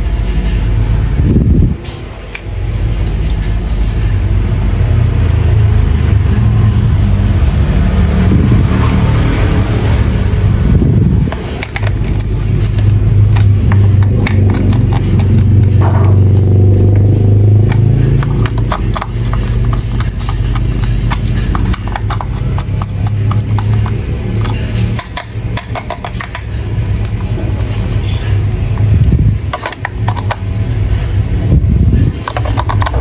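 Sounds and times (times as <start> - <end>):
plastic clicks and rattles: 11.3 - 27.8, 29.5 - 30.5, 32.0 - 33.0.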